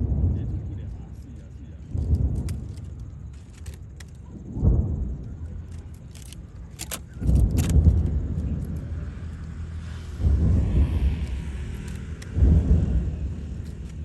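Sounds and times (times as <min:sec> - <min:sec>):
firework booms: 0:00.0 - 0:03.3, 0:04.3 - 0:05.7, 0:07.2 - 0:14.0
firework crackles and snaps: 0:00.0 - 0:14.0
rolling rumble: 0:00.0 - 0:14.0.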